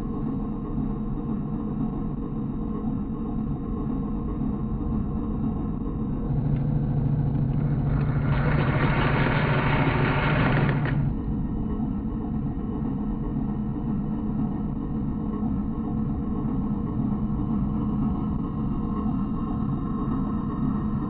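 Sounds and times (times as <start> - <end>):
constant low rumble: 0.0 - 21.0
motor humming: 6.0 - 11.2
whirring hiss: 6.3 - 11.1.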